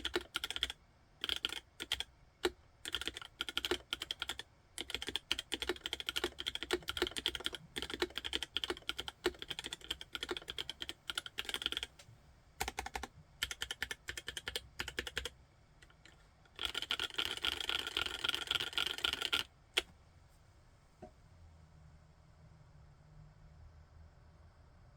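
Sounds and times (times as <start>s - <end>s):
typing on mechanical keyboard: 0.0s - 12.0s, 12.6s - 19.9s.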